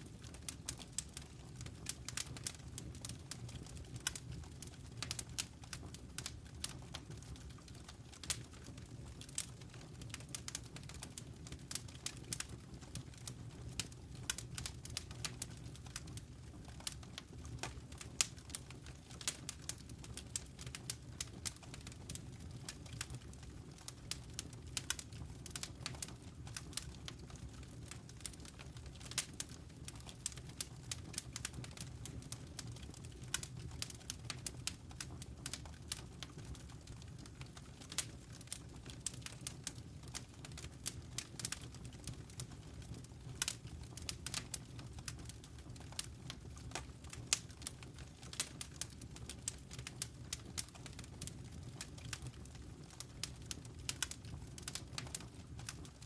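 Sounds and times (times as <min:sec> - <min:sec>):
fire crackling and popping: 0:00.0 - 0:56.0
low rumble of flames: 0:00.0 - 0:56.0.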